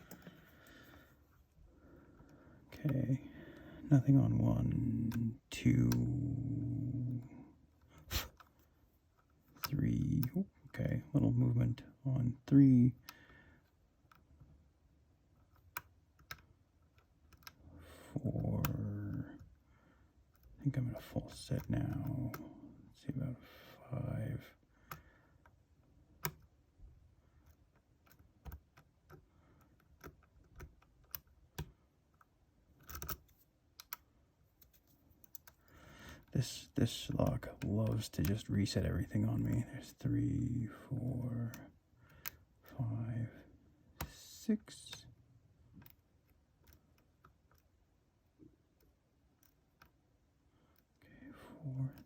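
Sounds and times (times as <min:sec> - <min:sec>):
lock pick clicking in a lock: 0:27.4 - 0:34.0, 0:45.7 - 0:47.7.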